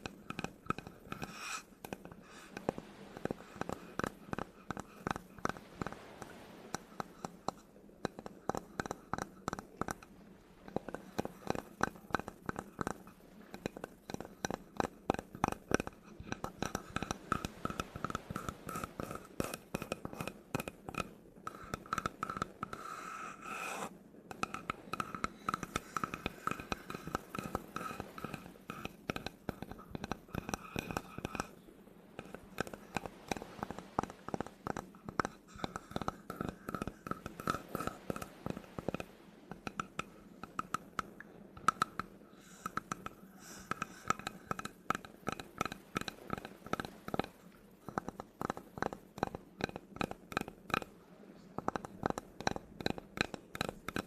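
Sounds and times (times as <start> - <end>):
fast tapping on wood: 0.0 - 10.1, 10.8 - 22.9, 23.7 - 31.5, 32.2 - 40.8, 51.6 - 54.0.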